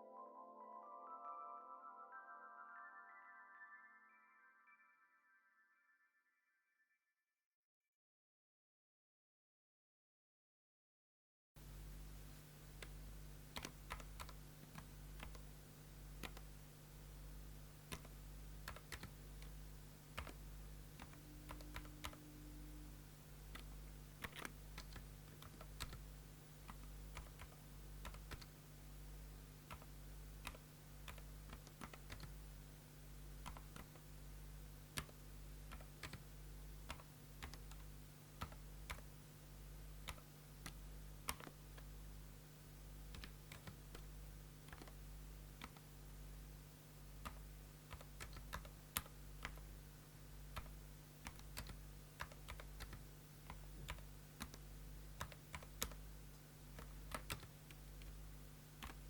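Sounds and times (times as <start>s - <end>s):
quiet keyboard keystrokes: 11.6s - 16.6s, 17.8s - 28.6s, 29.6s - 32.4s, 33.4s - 34.1s, 34.9s - 39.2s, 40.0s - 41.9s, 43.1s - 45.0s, 45.6s - 45.9s, 47.2s - 49.8s, 50.5s - 58.2s, 58.8s - 59.0s
steady low hum: 11.6s - 59.0s.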